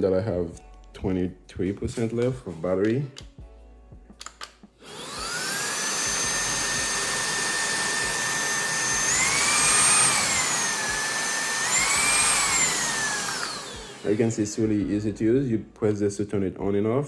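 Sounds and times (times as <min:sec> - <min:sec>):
stick vacuum motor whining: 0:04.8 - 0:14.6.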